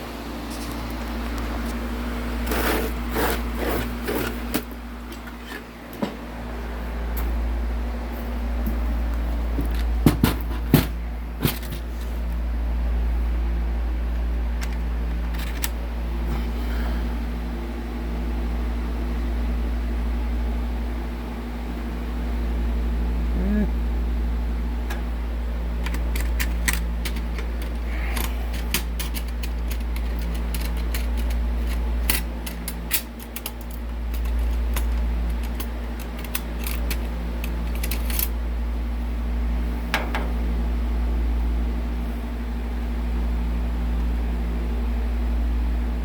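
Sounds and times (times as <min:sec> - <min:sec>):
low machine hum: 0:00.0 - 0:46.0
drill bits clicking and clinking: 0:25.8 - 0:38.3.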